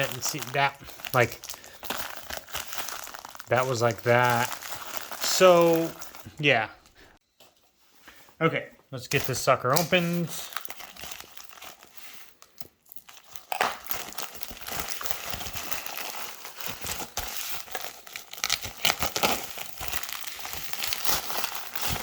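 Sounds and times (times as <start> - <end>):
packaging crinkling and crackling: 0.0 - 6.5, 9.2 - 22.0.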